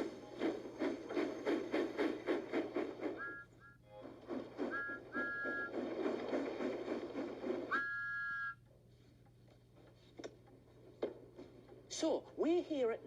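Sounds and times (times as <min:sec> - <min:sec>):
steam locomotive chuffing: 0:00.0 - 0:08.6
two-note steam whistle: 0:03.0 - 0:03.8, 0:04.6 - 0:05.8, 0:07.7 - 0:08.7.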